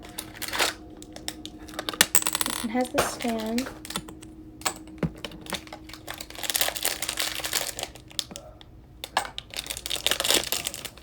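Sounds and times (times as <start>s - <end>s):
plastic wrapper crinkling: 5.2s - 11.0s.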